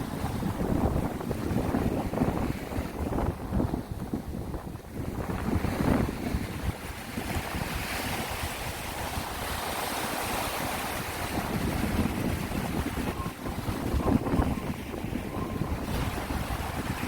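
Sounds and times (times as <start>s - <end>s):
sea waves washing ashore: 0.0s - 17.0s
wind buffeting microphone: 0.0s - 17.0s.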